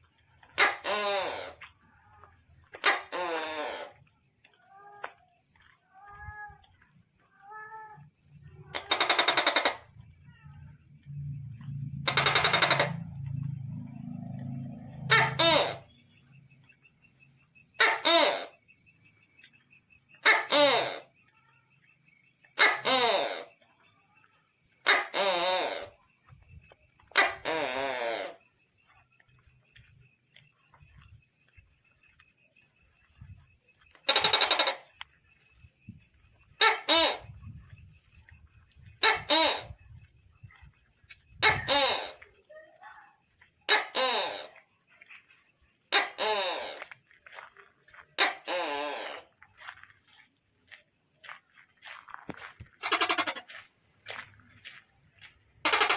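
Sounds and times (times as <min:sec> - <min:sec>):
gecko croaking calls: 0:00.0 - 0:04.1, 0:07.4 - 0:29.2, 0:33.2 - 0:44.7, 0:45.7 - 0:47.4, 0:48.2 - 0:49.4, 0:52.7 - 0:53.6, 0:55.6 - 0:55.9
insects chirring: 0:00.0 - 0:55.9.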